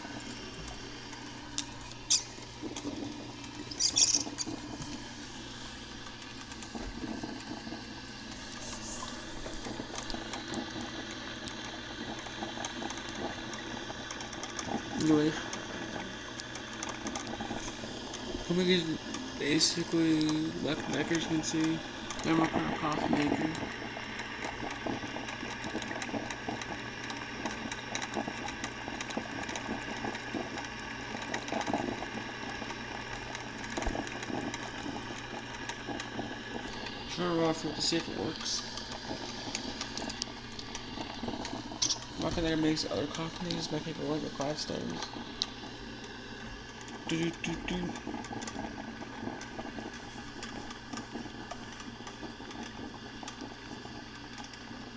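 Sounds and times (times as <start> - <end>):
coffee maker hissing and sputtering: 0.0 - 54.9
low steady hum: 0.0 - 54.9.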